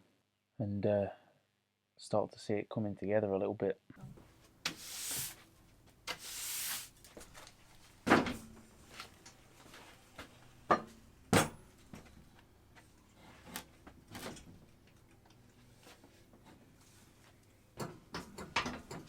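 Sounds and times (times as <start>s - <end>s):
short hiss: 4.7s - 5.4s, 6.2s - 7.0s.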